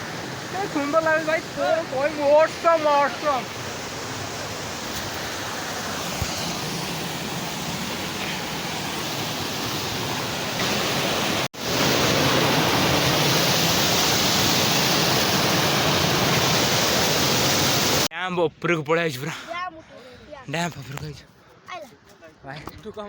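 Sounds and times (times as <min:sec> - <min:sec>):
waterfall rushing: 0:00.0 - 0:18.1.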